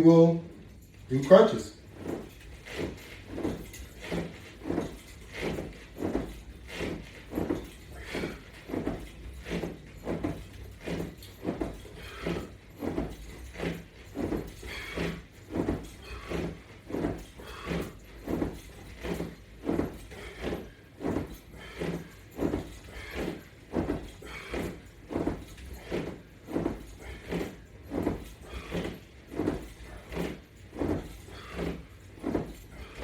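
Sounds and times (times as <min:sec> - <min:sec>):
person breathing effortfully: 0:11.9 - 0:13.1, 0:14.5 - 0:30.4.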